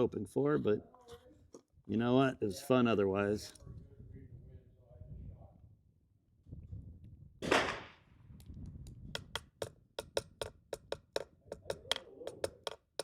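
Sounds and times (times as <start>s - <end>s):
rifle shot: 7.4s - 8.0s.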